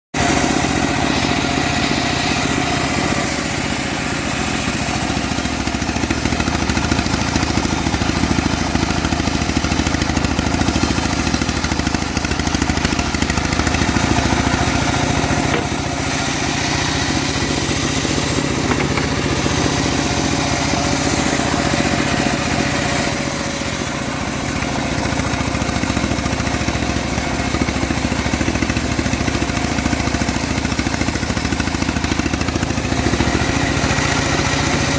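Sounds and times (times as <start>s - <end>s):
engine-driven bandsaw sawmill running: 0.2s - 34.9s.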